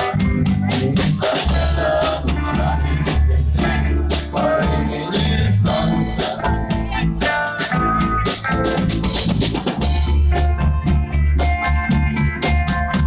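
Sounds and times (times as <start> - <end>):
bass guitar: 0.0 - 13.0
drum kit: 0.0 - 13.0
electric guitar: 0.0 - 13.0
person singing: 0.8 - 7.6.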